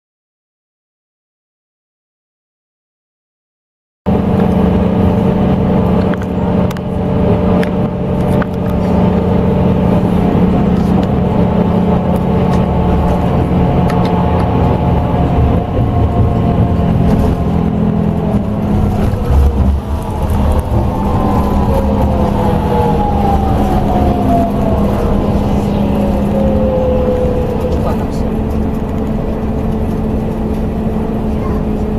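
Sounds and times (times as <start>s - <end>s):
coach engine hum: 4.1s - 31.9s
whining drivetrain tones: 4.1s - 31.9s.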